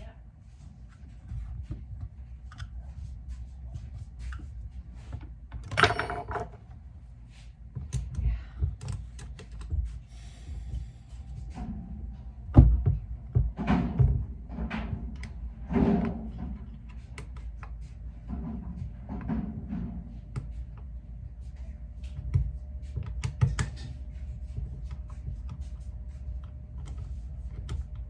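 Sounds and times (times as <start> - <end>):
rifle parts clicking and knocking: 5.6 - 6.6
metal parts clattering: 5.8 - 6.6.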